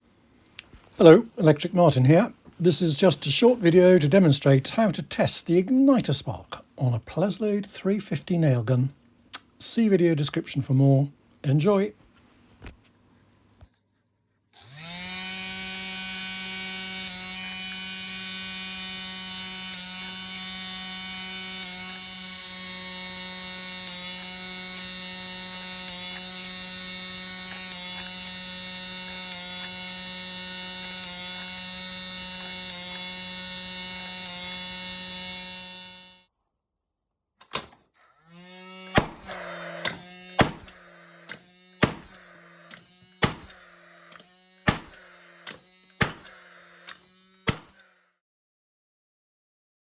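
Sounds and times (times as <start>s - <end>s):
nail gun fan motor whine: 14.6s - 36.3s, 38.3s - 47.9s
sharp clicks: 15.4s - 36.3s, 38.9s - 47.8s.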